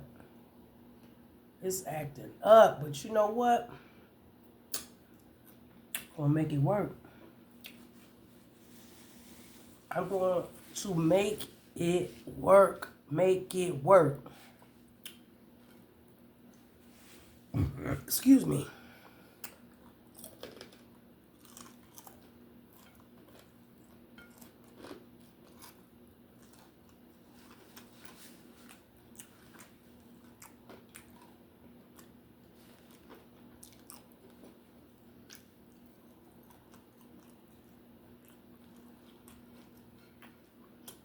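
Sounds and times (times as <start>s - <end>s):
person chewing: 19.0s - 41.0s.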